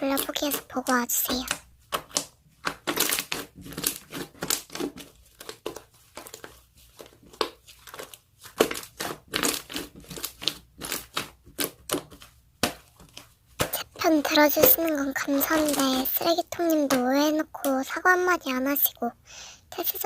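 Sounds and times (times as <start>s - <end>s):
slime crackling pops: 7.3s - 16.2s.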